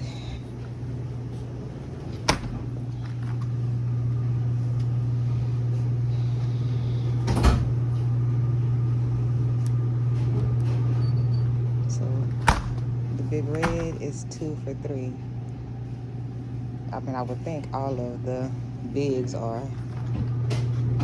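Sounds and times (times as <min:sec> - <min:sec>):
steady low hum: 0:00.0 - 0:21.0
door clunks: 0:02.0 - 0:03.6, 0:07.2 - 0:07.8, 0:12.3 - 0:12.9, 0:13.5 - 0:14.2.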